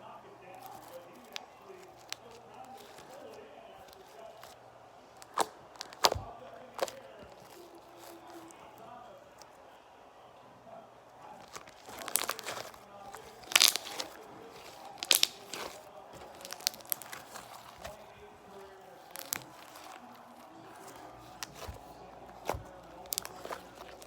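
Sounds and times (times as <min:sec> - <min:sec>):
slime squeezed crackling pops: 0:05.2 - 0:08.4, 0:11.4 - 0:18.0, 0:19.0 - 0:20.1, 0:20.7 - 0:24.0.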